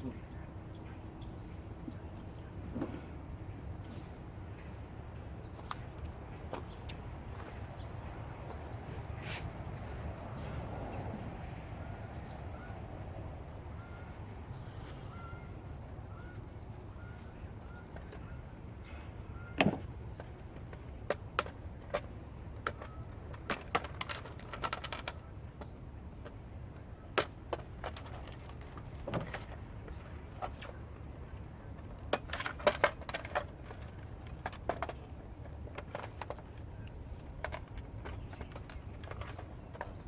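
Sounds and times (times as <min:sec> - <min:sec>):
tools and metal parts clicking: 0:21.1 - 0:25.2, 0:31.9 - 0:40.0.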